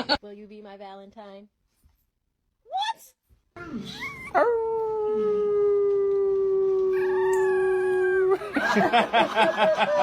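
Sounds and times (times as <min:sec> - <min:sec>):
animal howling: 0:04.0 - 0:08.4.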